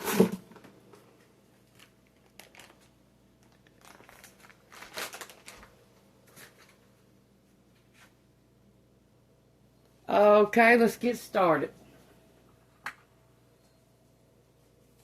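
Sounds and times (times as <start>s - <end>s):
food packaging crinkling: 1.6s - 6.9s.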